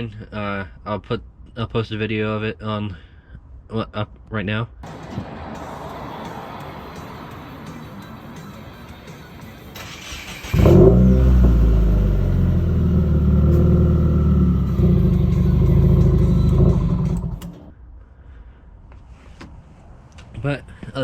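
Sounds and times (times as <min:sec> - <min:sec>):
car engine starter cranking: 0:09.7 - 0:17.7
car engine running: 0:10.3 - 0:17.7.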